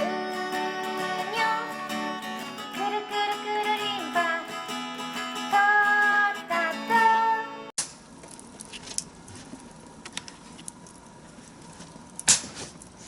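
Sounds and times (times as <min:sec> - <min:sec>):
acoustic guitar melody: 0:00.0 - 0:07.7.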